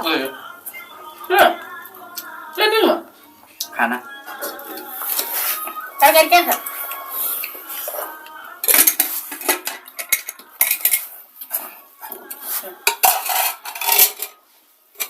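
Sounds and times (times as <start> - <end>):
spoons clinking on metal dishes: 4.4 - 14.4.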